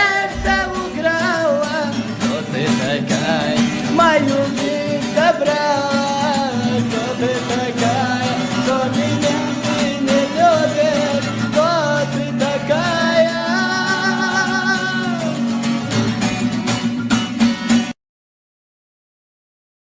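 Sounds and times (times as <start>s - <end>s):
person singing: 0.0s - 15.6s
plucked strings and guitar: 0.0s - 18.0s.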